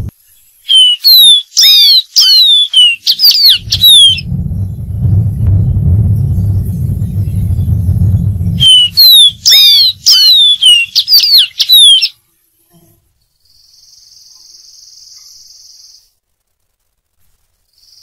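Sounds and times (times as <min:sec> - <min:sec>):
bird whistling song: 0:00.0 - 0:04.7, 0:05.6 - 0:12.2
faint high hiss: 0:00.0 - 0:18.0
low rumble: 0:03.3 - 0:11.0.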